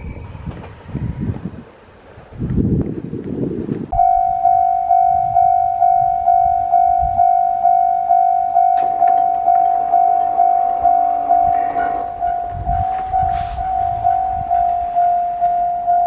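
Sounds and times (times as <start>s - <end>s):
train rumbling: 0.0s - 16.0s
level crossing warning bell ringing: 4.0s - 16.0s.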